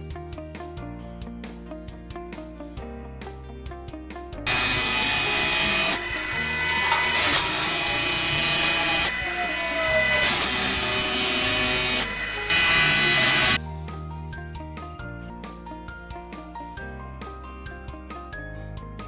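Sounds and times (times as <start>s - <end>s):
saw blade cutting stone: 4.5s - 13.6s.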